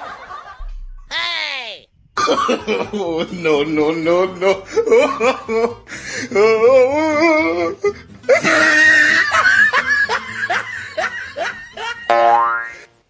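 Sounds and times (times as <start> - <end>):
music: 2.8 - 12.1
burst of laughing: 8.3 - 12.0
warbling laugh: 8.3 - 12.2
springy boing effect: 12.1 - 12.9.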